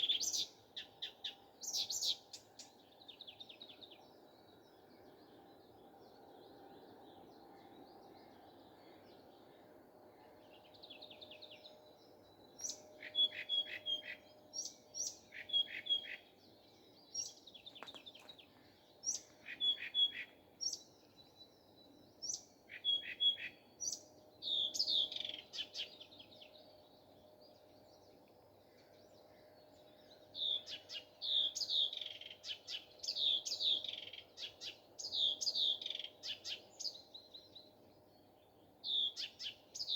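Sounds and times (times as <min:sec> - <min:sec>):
nightingale singing: 0:00.0 - 0:04.5, 0:10.5 - 0:27.6, 0:30.1 - 0:39.9.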